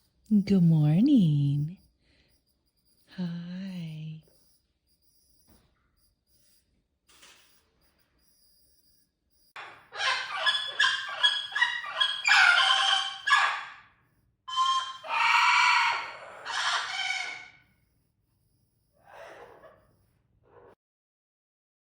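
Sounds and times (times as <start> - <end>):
parrot squawking and calling: 9.6 - 13.8, 14.5 - 17.6, 19.0 - 19.8.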